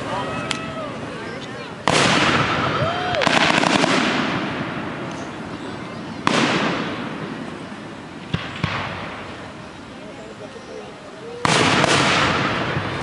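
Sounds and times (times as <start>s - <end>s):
fireworks bursting: 0.0s - 10.4s, 11.3s - 13.0s
fireworks bang echo: 1.8s - 9.6s, 11.4s - 13.0s.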